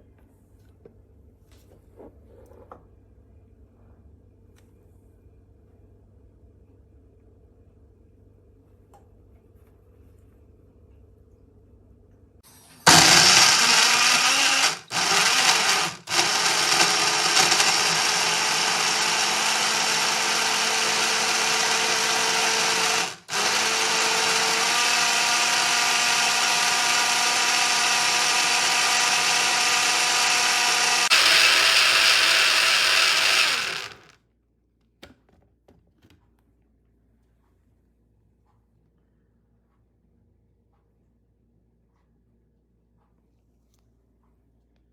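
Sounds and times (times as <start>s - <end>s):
blender running: 12.8s - 34.2s.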